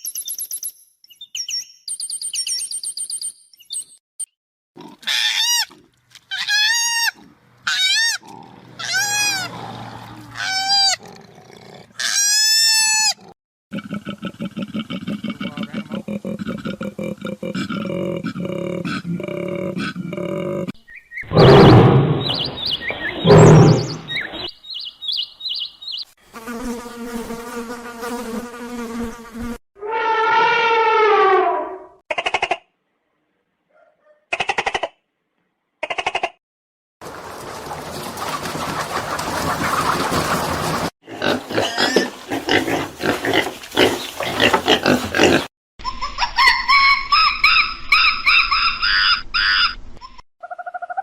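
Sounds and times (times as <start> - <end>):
drawn-out falling animal call: 4.9 - 17.7, 37.0 - 45.5
high chirping animal calls: 20.8 - 26.2, 45.8 - 51.0
rough noisy animal bursts: 23.2 - 24.1.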